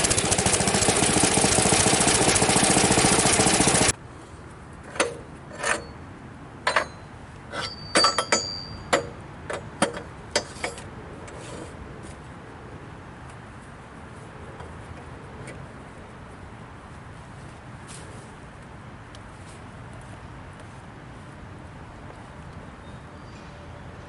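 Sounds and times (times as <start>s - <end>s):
band sawmill engine running: 0.0s - 4.0s
high metallic ring: 6.7s - 9.2s.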